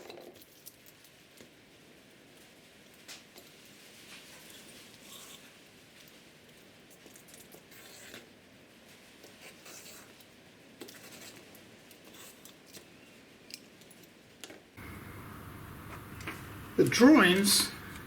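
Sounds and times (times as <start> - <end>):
small clicks and taps: 13.5 - 16.8.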